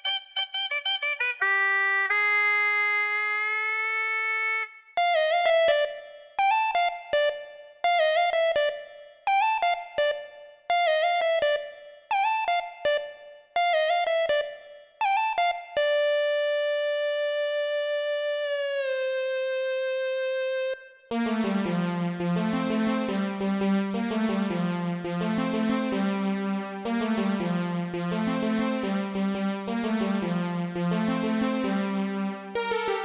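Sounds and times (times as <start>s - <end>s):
synthesizer keyboard lead: 15.8s - 33.0s.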